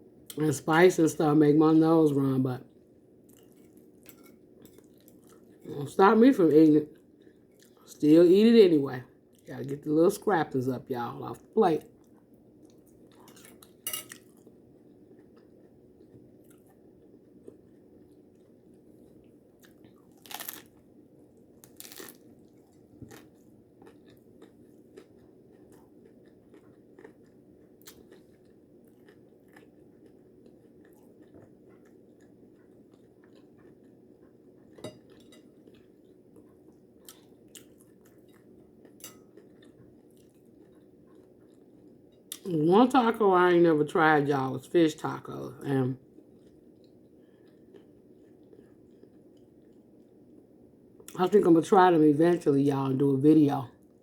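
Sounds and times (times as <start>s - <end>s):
steady low hum: 0.0s - 54.0s
chewing and crunching food: 2.6s - 8.0s, 9.0s - 10.3s, 11.4s - 44.0s, 44.6s - 51.4s
cutlery clicking on plate: 13.9s - 14.2s.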